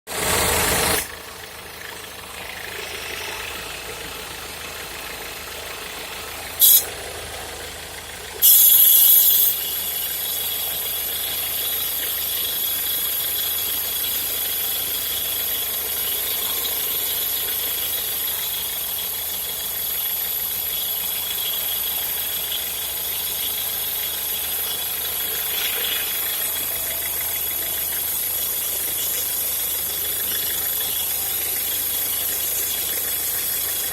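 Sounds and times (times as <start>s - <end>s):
car engine running: 0.0s - 33.9s
loud short bursts: 6.6s - 6.9s, 8.4s - 10.3s
thin high-pitched whine: 8.4s - 33.9s.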